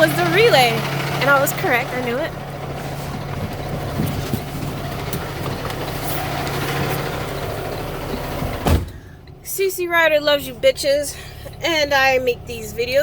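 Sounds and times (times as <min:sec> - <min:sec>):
truck engine humming: 0:00.0 - 0:13.0
thump: 0:08.4 - 0:09.1.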